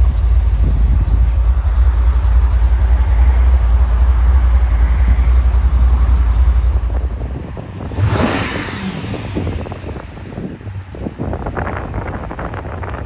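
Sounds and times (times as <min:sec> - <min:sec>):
vehicle engine rumble: 0:00.0 - 0:13.0
short rush of noise: 0:07.9 - 0:10.6.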